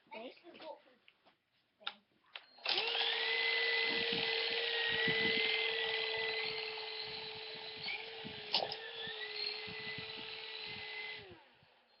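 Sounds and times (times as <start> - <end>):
electric motor high whine: 2.6 - 12.0.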